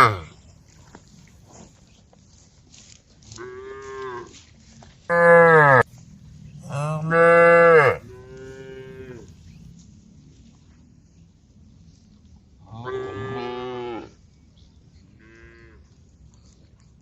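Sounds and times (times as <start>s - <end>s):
cows mooing: 0.0s - 0.3s, 5.1s - 5.8s, 6.6s - 9.3s.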